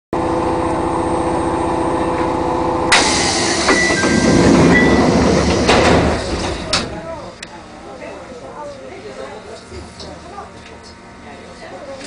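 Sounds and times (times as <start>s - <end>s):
electric train humming: 0.2s - 9.1s
train rumble with high tones: 0.2s - 12.0s.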